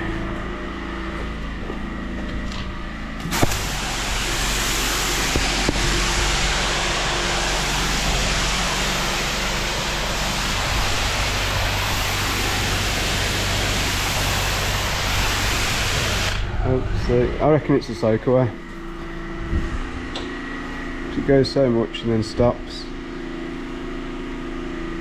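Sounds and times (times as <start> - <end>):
washer engine humming: 0.0 - 25.0
pressure washer spraying water: 3.2 - 16.6.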